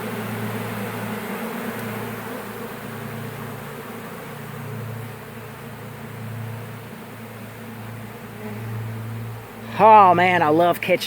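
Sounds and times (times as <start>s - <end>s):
honeybees buzzing: 0.0s - 11.0s.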